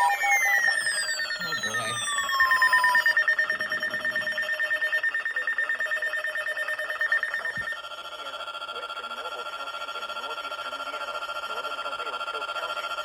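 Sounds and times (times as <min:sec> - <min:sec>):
pulsing electronic alert tone: 0:00.0 - 0:07.9.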